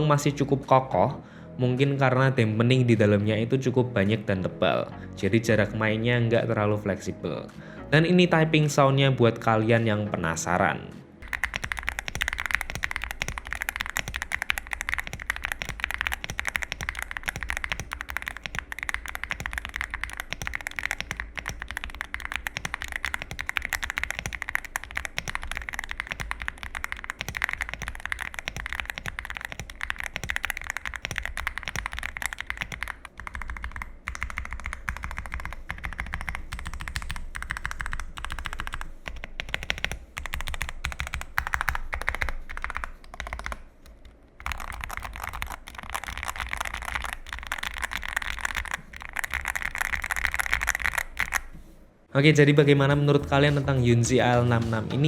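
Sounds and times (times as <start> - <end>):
fast mechanical keyboard typing: 11.2 - 51.6.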